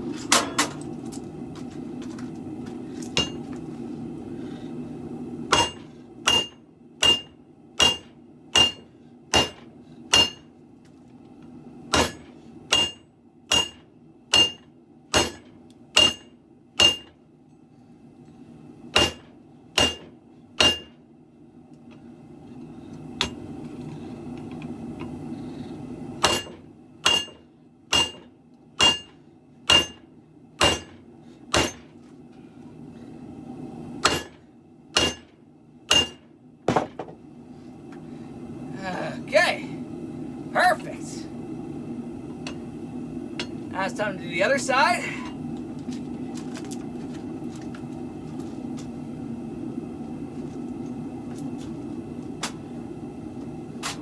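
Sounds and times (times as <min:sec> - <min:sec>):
hammer striking steel on anvil: 0:03.2 - 0:03.5, 0:05.5 - 0:10.5, 0:11.9 - 0:17.2, 0:19.0 - 0:20.9, 0:26.2 - 0:30.0, 0:30.6 - 0:31.9, 0:34.0 - 0:34.4, 0:35.0 - 0:35.3, 0:35.9 - 0:36.3.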